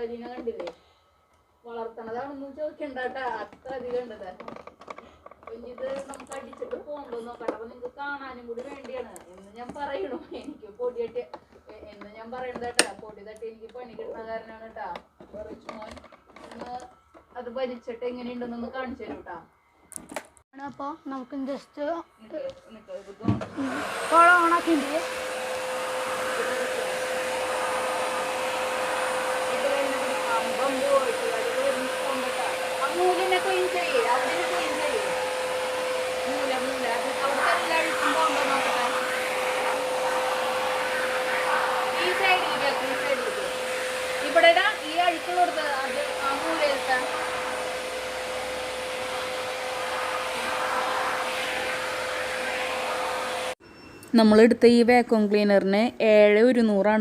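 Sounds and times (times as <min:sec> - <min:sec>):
vacuum cleaner running: 0:23.2 - 0:53.6.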